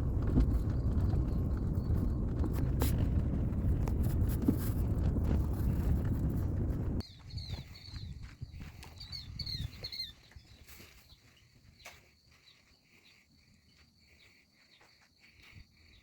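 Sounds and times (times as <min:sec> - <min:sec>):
low handling rumble: 0:00.0 - 0:07.0
faint bird chirps: 0:07.0 - 0:16.0.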